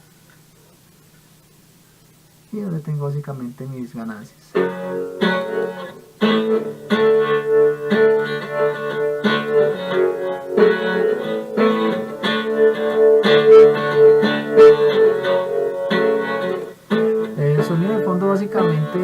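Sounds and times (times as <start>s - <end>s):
guitar chords with effects: 4.5s - 19.0s
held guitar note ringing: 4.5s - 19.0s.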